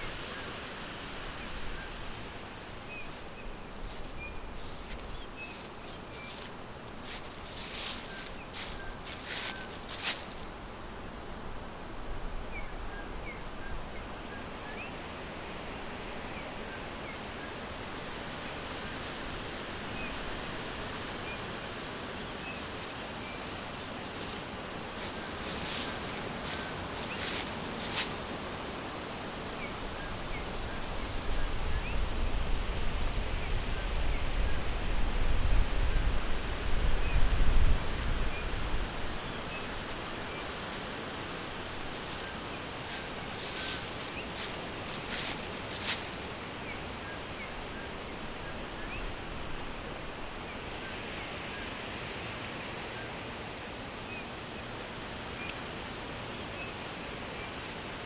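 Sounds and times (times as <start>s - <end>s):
brief rustles: 3.1s - 10.6s, 21.8s - 28.5s, 38.9s - 46.4s.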